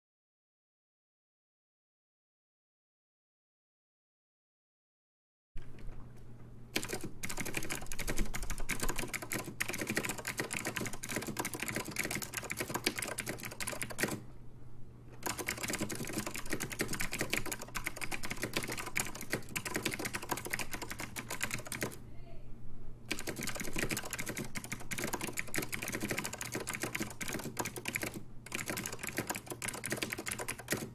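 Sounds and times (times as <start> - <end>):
clicky keyboard typing: 6.8 - 14.2, 15.2 - 22.0, 23.1 - 30.9.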